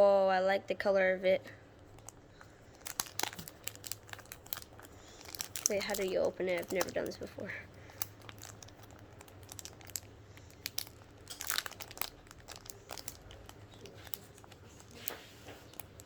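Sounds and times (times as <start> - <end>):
packaging clicks and taps: 1.8 - 16.0
packaging rustle: 1.8 - 16.0.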